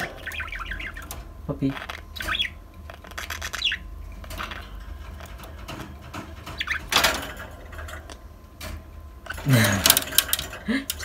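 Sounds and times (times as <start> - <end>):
budgerigar chirping: 0.0 - 3.9, 6.4 - 7.1
faint clicks and scratches: 4.2 - 7.0.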